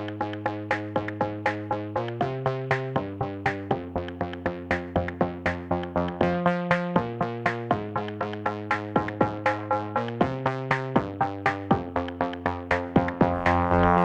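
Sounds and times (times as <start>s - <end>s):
drum machine beat: 0.0s - 14.0s
synthesizer chords: 0.0s - 14.0s.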